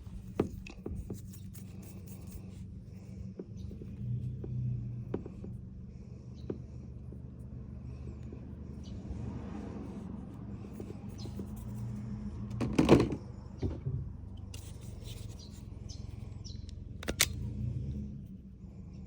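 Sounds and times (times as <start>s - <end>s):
steady low hum: 0.0s - 12.5s.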